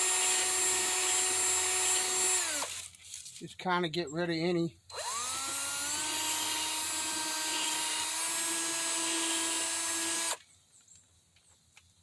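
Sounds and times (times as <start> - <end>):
electric drill running: 0.0 - 2.8, 4.9 - 10.4.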